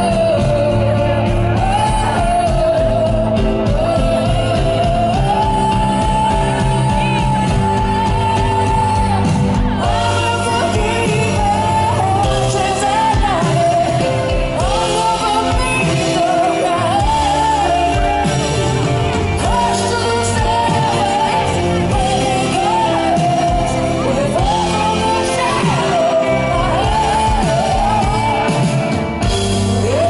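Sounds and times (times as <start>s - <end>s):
live band playing pop song: 0.0s - 30.0s.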